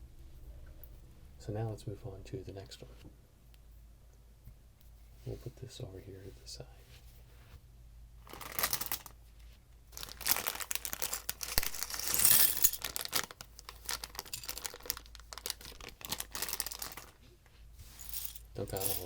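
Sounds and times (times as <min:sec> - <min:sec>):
plastic packaging crackling and tearing: 0:08.2 - 0:09.1, 0:09.9 - 0:17.3.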